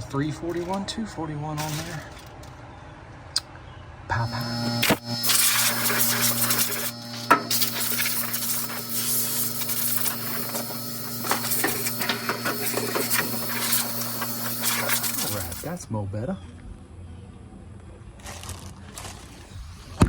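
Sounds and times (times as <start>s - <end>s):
clothes dryer motor humming: 4.1s - 15.8s.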